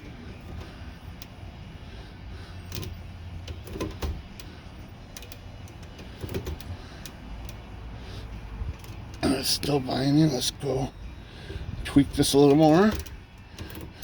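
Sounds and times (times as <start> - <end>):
typewriter mechanism clicks and knocks: 2.7 - 4.4, 5.2 - 6.7.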